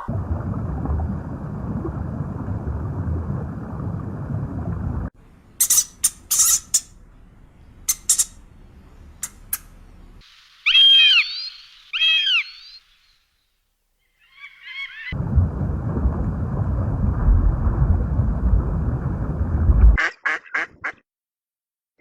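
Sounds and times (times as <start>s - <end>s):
bird chirps and calls: 10.7s - 12.9s.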